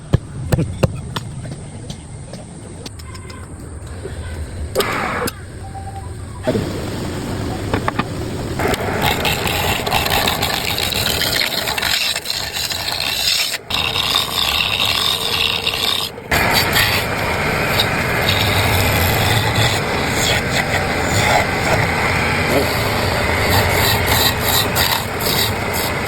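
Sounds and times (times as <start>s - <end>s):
tool scraping wood: 7.7s - 26.0s.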